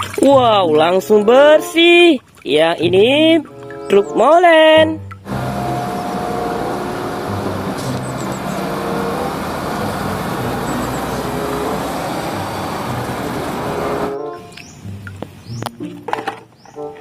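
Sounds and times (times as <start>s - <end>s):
truck engine running: 5.3s - 14.2s.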